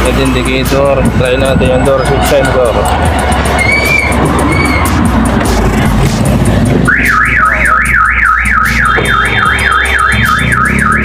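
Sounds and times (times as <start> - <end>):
car alarm siren wailing: 3.3 - 5.0, 6.8 - 11.0.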